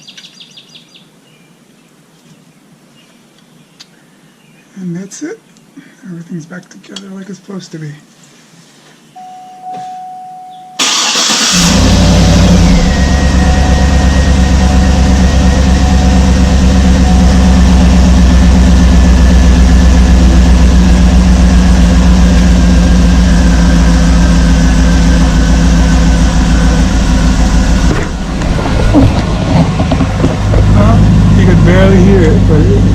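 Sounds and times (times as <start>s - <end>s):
engine cranking and starting: 10.8s - 15.8s
engine idling loudly: 10.8s - 32.9s.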